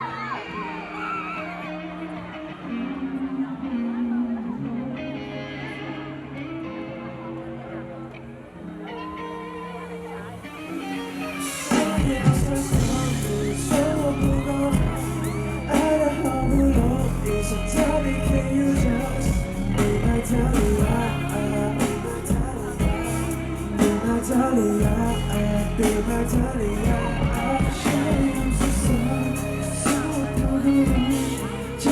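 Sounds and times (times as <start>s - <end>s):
person singing: 0.0s - 7.7s, 8.8s - 31.9s
live pop music: 0.0s - 31.9s
steady drum beat: 11.7s - 31.9s.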